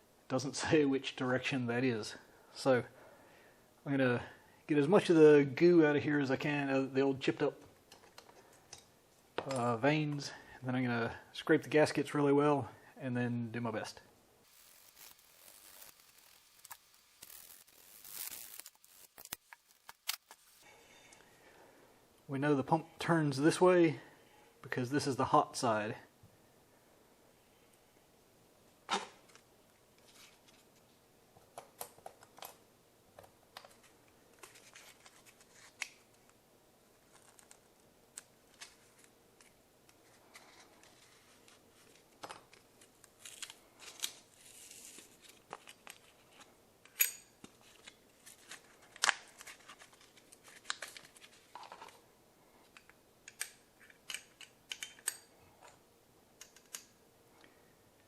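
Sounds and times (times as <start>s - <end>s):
small parts clicking and tapping: 52.7s - 55.8s, 56.4s - 56.9s.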